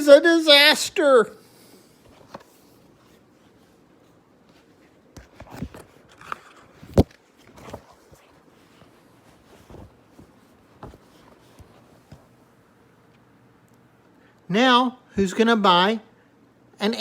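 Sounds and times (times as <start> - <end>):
book pages rustling and clicking: 2.0 - 12.4.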